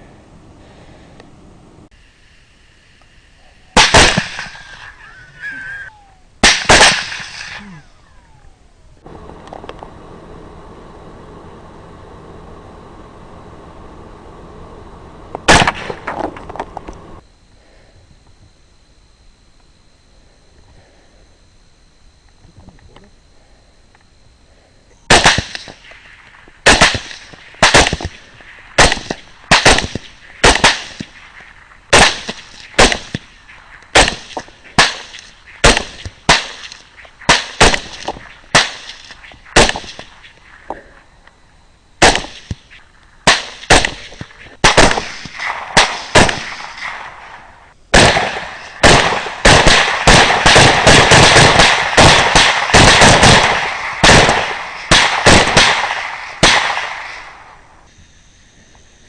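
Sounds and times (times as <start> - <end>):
rifle shots: 3.8 - 4.9, 6.4 - 8.4, 15.4 - 16.6, 25.1 - 40.6, 42.0 - 57.6.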